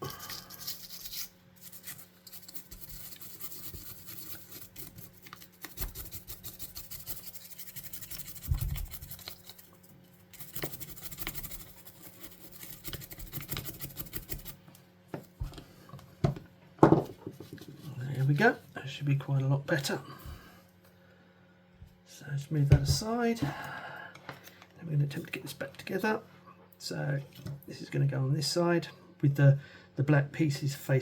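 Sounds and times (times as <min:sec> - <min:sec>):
toothbrush scrubbing plastic: 0:00.0 - 0:14.6.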